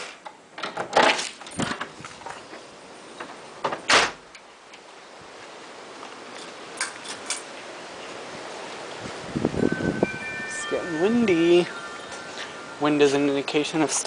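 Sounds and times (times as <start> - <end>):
door banging shut: 3.6 - 4.2
faint wind rush: 7.7 - 14.0.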